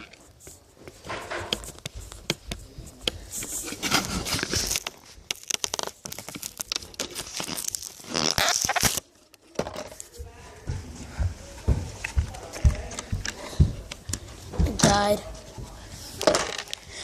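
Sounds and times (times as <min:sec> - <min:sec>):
rustling and scraping on microphone: 0:00.0 - 0:05.3.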